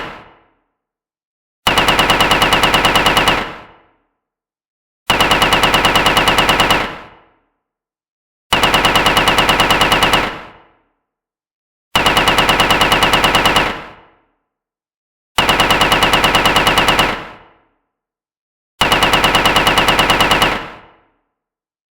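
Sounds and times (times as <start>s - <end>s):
automatic gunfire bursts: 1.7s - 3.6s, 18.8s - 20.8s.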